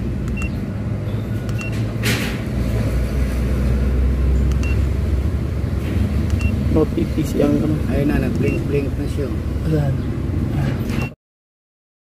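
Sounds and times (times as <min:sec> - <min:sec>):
short high beeps: 0:06.3 - 0:06.6.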